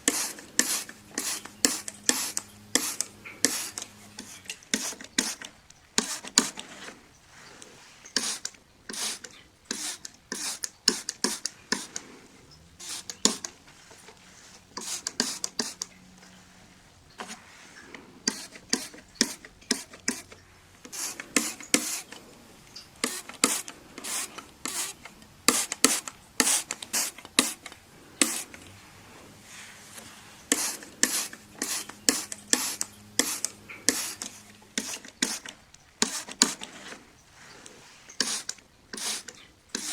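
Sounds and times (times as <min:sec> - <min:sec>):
wiping strokes on glass: 0:00.0 - 0:39.9.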